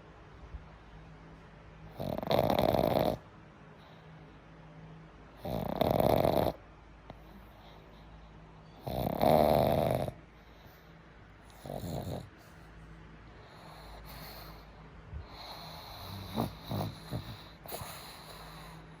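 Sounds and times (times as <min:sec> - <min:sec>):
dog snoring: 0:01.9 - 0:04.0, 0:05.3 - 0:08.0, 0:08.8 - 0:10.9, 0:11.5 - 0:12.7, 0:13.4 - 0:19.0.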